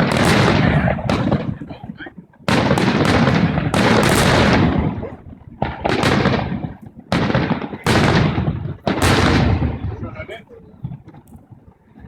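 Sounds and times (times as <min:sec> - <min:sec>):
firework rumble and crackle: 0:00.0 - 0:12.0
firework shell bursts: 0:02.5 - 0:10.0.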